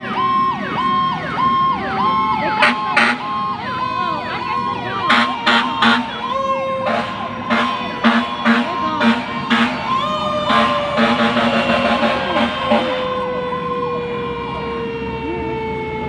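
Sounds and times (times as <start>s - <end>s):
emergency sirens wailing: 0.0s - 16.0s
horn honks: 2.6s - 3.5s, 4.9s - 13.3s.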